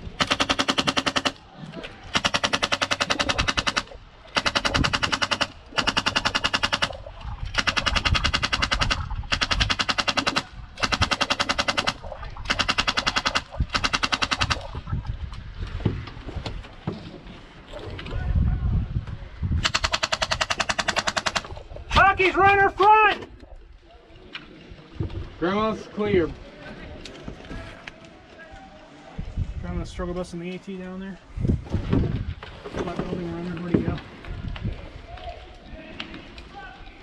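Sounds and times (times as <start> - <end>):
airsoft gun full-auto bursts: 0.1 - 1.4, 2.1 - 7.0, 7.6 - 14.7, 19.6 - 21.5.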